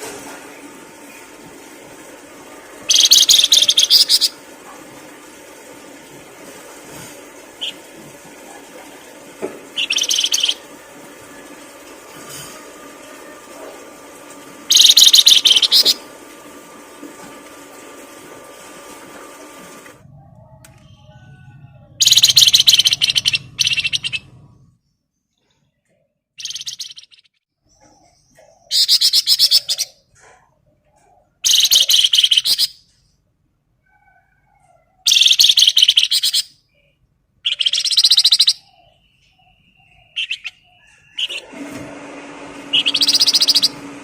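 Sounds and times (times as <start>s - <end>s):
songbird chattering: 2.9s - 4.4s, 9.8s - 10.6s, 14.7s - 16.0s, 22.0s - 24.2s, 26.4s - 30.0s, 31.5s - 32.8s, 35.1s - 36.9s, 37.5s - 41.3s, 42.8s - 43.7s.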